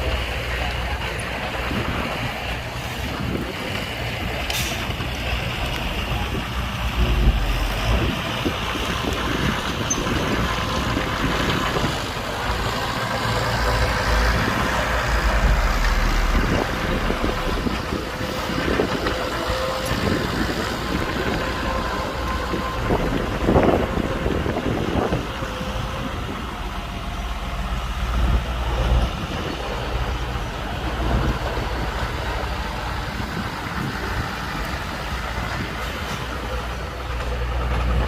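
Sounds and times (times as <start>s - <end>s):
heavy diesel machinery running: 0.0s - 38.0s
wind buffeting microphone: 0.0s - 38.0s.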